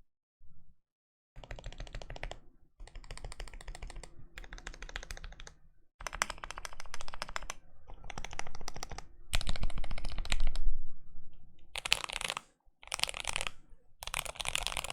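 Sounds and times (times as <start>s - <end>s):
mechanical keyboard typing: 1.4s - 10.6s, 11.8s - 14.9s.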